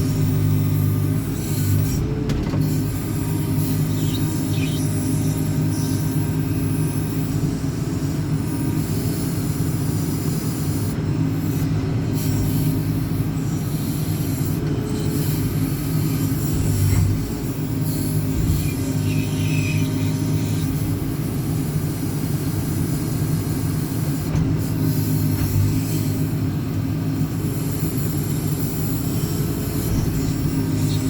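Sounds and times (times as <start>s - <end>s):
diesel engine running: 0.0s - 31.0s.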